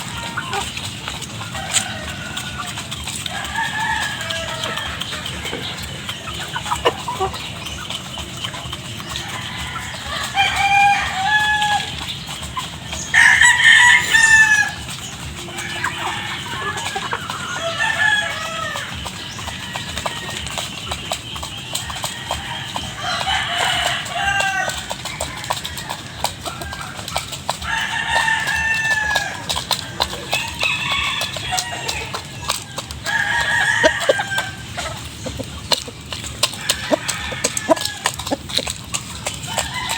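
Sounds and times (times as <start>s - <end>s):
chickens clucking: 0.0s - 39.9s
rooster crowing: 1.5s - 6.1s, 9.0s - 12.0s, 13.0s - 20.7s, 21.8s - 35.0s, 36.5s - 38.5s, 39.5s - 39.9s.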